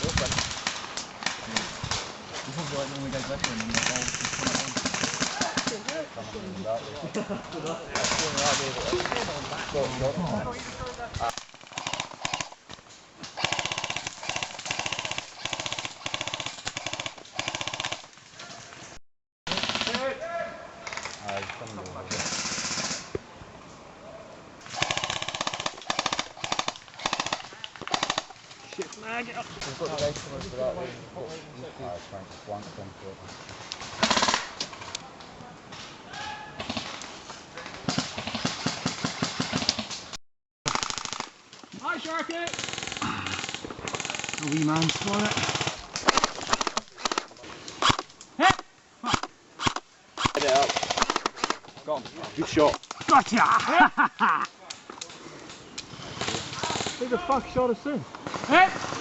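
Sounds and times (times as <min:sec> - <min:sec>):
airsoft rifle firing bursts: 0:11.7 - 0:12.6, 0:13.4 - 0:18.1, 0:22.1 - 0:23.0, 0:24.7 - 0:28.4, 0:34.0 - 0:34.5, 0:40.7 - 0:41.3, 0:42.4 - 0:48.0, 0:49.1 - 0:51.6.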